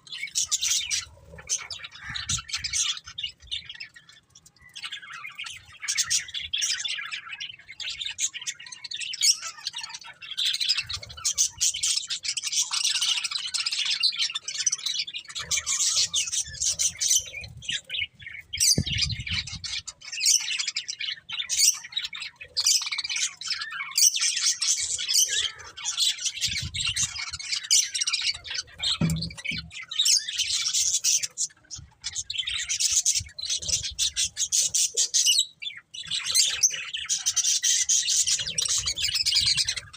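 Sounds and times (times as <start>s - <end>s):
budgerigars chirping and chattering: 0.0s - 39.9s.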